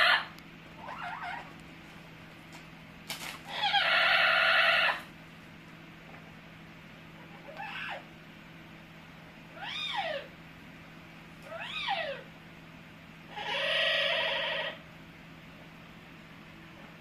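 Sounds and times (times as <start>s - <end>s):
parrot calling: 0.0s - 1.6s, 3.4s - 5.1s, 7.3s - 8.1s, 9.5s - 10.4s, 11.4s - 12.3s, 13.3s - 14.8s.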